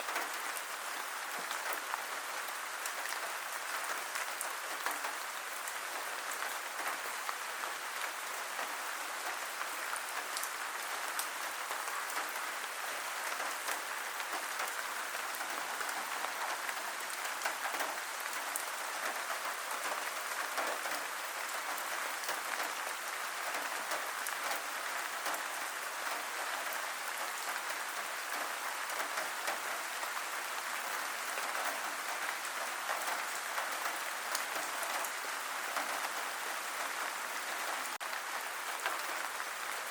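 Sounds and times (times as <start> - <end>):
steady rainfall: 0.0 - 39.9.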